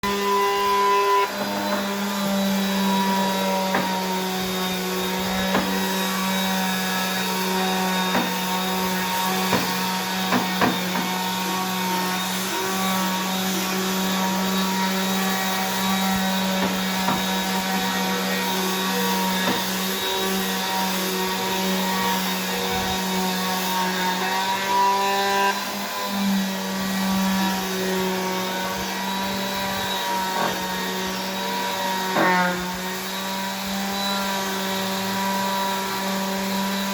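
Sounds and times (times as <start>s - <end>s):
power tool motor running: 0.0s - 36.9s
wood knocks: 5.5s - 5.8s, 9.5s - 11.1s, 16.6s - 17.2s.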